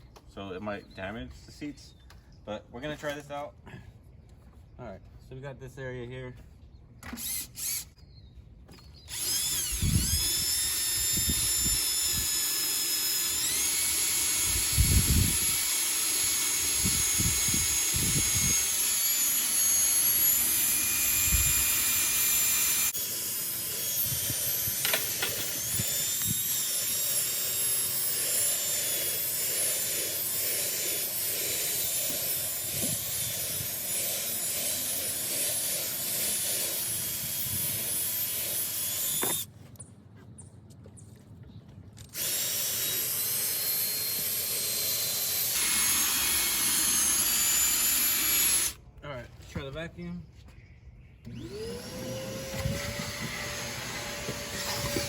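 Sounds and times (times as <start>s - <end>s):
power drill motor whine: 7.0s - 8.0s, 9.0s - 39.5s, 42.1s - 48.8s, 51.2s - 55.0s.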